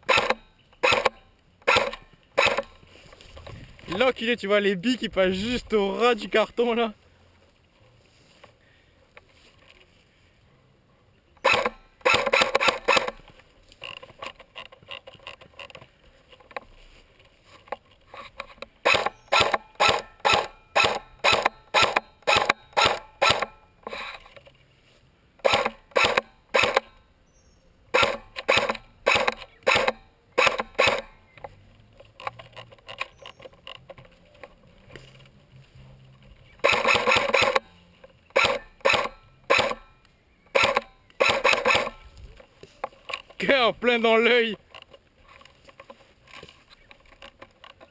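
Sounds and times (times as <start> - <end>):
airsoft guns firing rapid shots: 0.0 - 2.7, 11.4 - 13.2, 18.8 - 23.6, 25.4 - 26.9, 28.0 - 31.1, 36.6 - 37.6, 38.3 - 39.8, 40.5 - 42.0.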